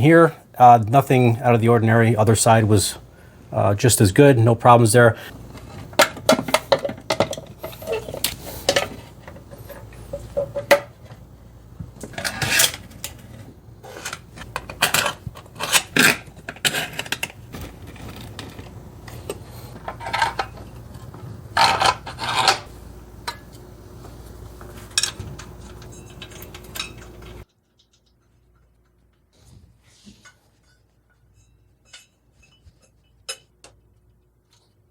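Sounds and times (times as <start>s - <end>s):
metal tools clinking and clanking: 24.9s - 28.4s.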